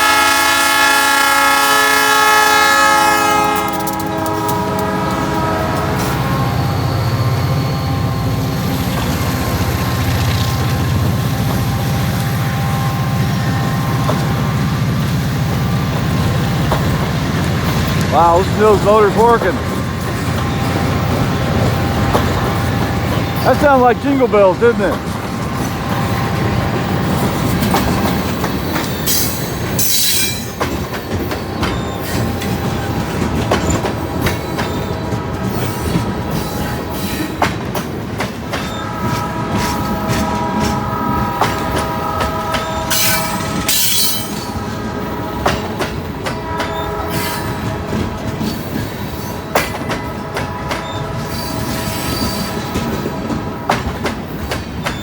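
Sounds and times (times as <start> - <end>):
freight train rumbling: 0.0 - 55.0
high-pitched wheel squeal: 6.0 - 8.6.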